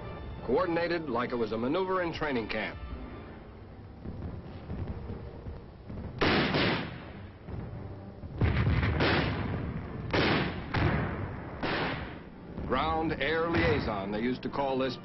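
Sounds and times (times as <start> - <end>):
heavy gunshots and blasts: 5.9 - 7.3, 8.4 - 14.1.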